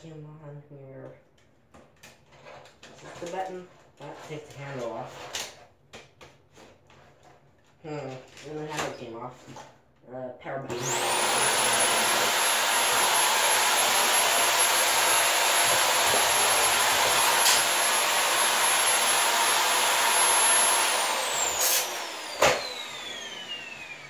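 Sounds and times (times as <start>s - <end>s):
vacuum cleaner motor whine: 10.7s - 24.0s.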